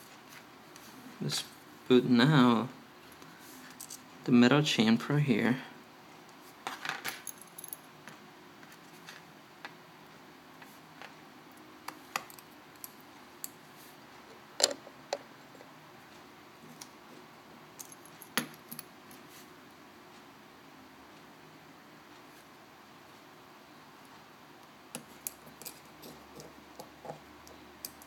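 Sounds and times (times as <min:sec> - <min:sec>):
faint steady hum: 0:00.0 - 0:28.0
metal tool clicks and taps: 0:26.4 - 0:28.0.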